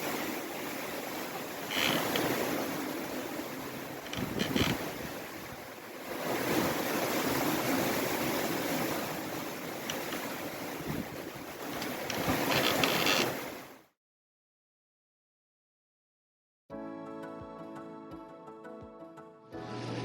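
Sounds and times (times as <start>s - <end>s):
rough seas breaking around boat: 0.0s - 13.8s
wind noise: 1.6s - 13.4s.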